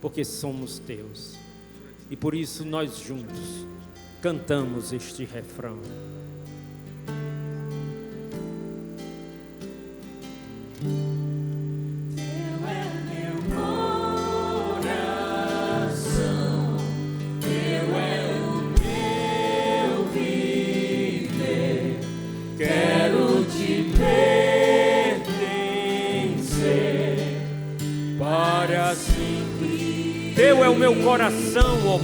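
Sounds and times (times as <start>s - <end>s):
voices singing a hymn: 12.1s - 32.0s
held keyboard and bass chords: 13.5s - 32.0s
drum hits: 18.8s - 19.3s, 24.0s - 24.4s, 29.1s - 29.6s, 31.6s - 32.0s.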